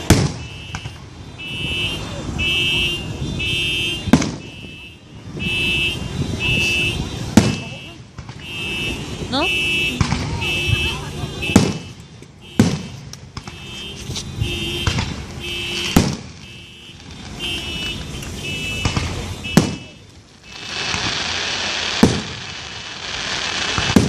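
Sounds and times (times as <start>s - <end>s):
loud firework bangs: 0.0s - 2.6s, 3.4s - 24.0s
car alarm pulsing tone: 0.3s - 20.9s
hiss of fireworks spraying: 17.0s - 24.0s.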